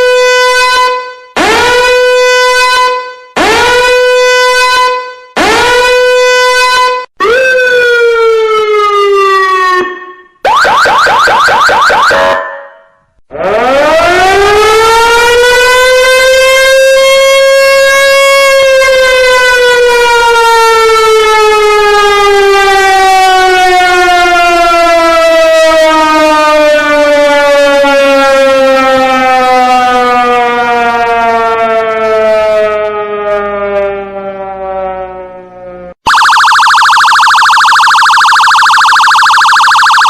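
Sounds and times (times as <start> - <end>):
siren winding down: 0.0 - 40.0
harsh buzzing alarm tone: 36.1 - 40.0.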